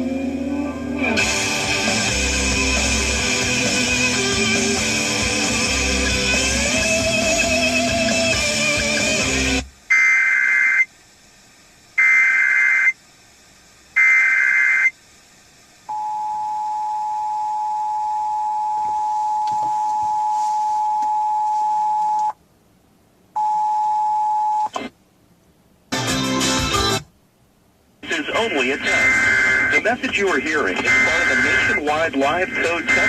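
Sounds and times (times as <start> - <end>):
two-tone attention signal: 28.9 - 29.9, 30.8 - 31.8
buzzing digital data bursts: 30.9 - 33.0.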